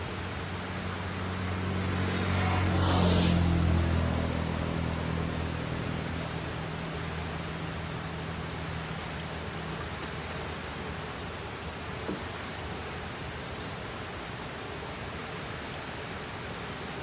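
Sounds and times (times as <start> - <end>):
river rushing: 0.0 - 17.0
vehicle driving past: 0.2 - 10.8.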